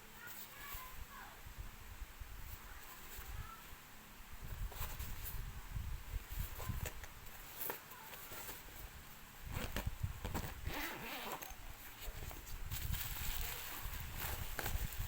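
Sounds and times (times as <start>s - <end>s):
rasping rustle: 0.1s - 1.3s, 6.2s - 15.0s.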